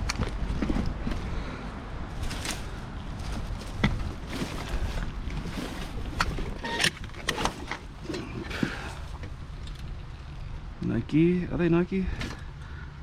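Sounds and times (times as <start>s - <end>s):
steady low rumble: 0.0s - 13.0s
objects knocking and rustling: 2.2s - 9.9s.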